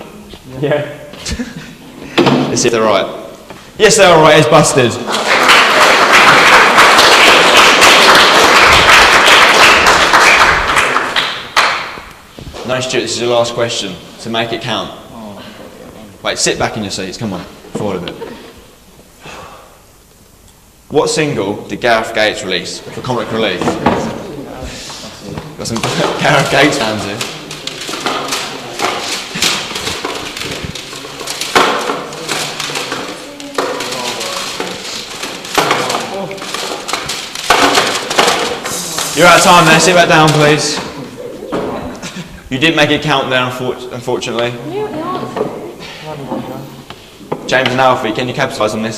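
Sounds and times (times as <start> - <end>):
audience applauding: 4.4 - 12.1, 26.0 - 40.6
plastic cd cases clattering: 25.6 - 40.9.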